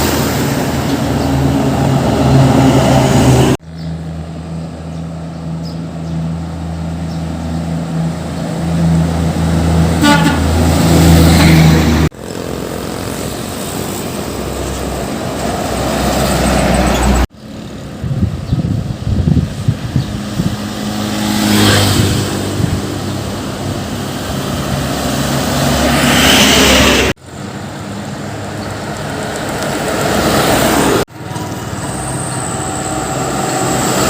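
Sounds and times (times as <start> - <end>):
diesel truck engines running: 0.0 - 34.0
horn toot: 9.8 - 12.0.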